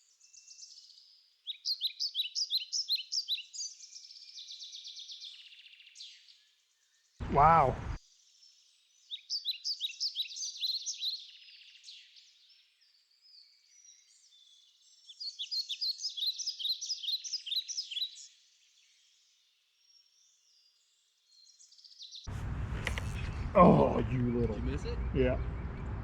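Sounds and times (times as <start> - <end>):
small bird chirping: 0.0 - 18.9.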